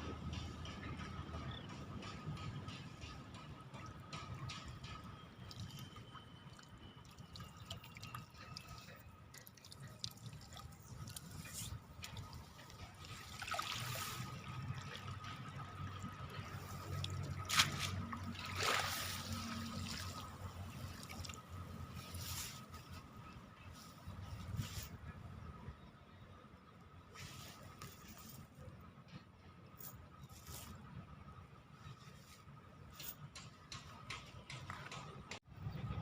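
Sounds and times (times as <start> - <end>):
water trickling and dripping: 4.6 - 22.0
water splashes: 6.5 - 21.9.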